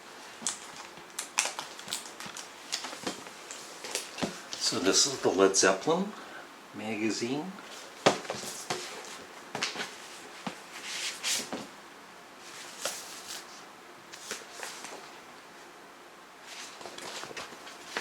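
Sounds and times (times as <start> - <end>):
paper rustle: 12.4 - 15.1, 16.4 - 18.0.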